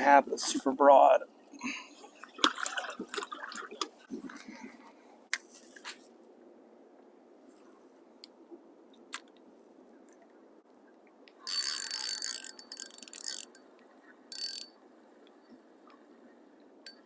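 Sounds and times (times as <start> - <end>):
fishing reel ratchet whirring: 11.4 - 13.6, 14.3 - 14.7.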